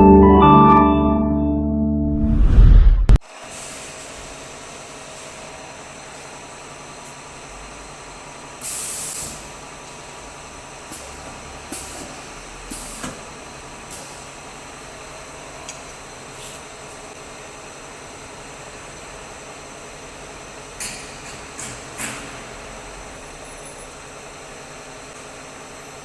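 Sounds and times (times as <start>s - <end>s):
compressed air hissing: 8.6s - 9.4s.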